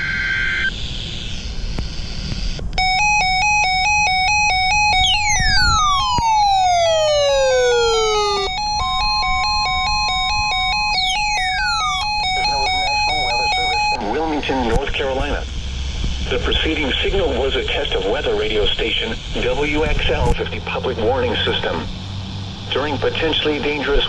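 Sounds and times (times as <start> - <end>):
radio hiss: 0.0 - 2.8, 12.0 - 21.9, 22.7 - 24.0
warbling electronic alarm: 0.0 - 14.6
digital data tones: 0.0 - 15.5
falling sweeping tones: 2.8 - 14.0.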